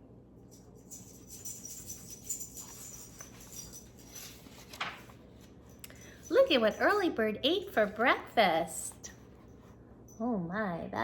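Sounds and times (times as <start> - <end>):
paper page rustling: 1.8 - 5.7
page flapping: 4.2 - 5.6.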